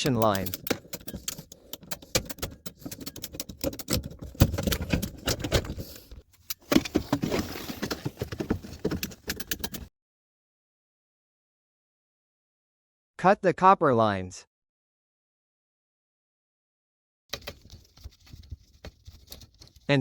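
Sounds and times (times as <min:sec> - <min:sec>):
hand tools clicking and clattering: 0:00.0 - 0:05.9.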